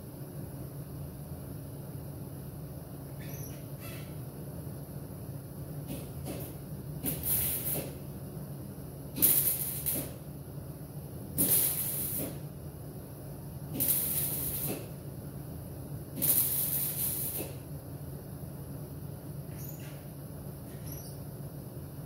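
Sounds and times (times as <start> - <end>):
welder welding bursts: 5.9 - 8.0, 9.1 - 10.3, 11.3 - 12.4, 13.7 - 15.0, 16.2 - 17.6.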